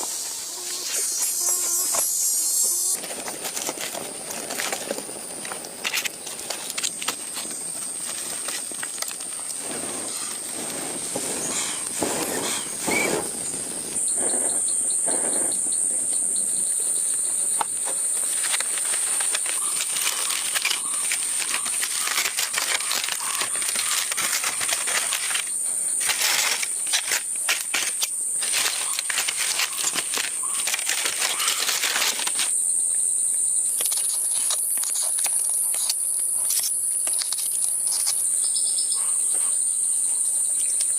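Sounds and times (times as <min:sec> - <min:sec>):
forest insects buzzing: 0:00.0 - 0:40.9.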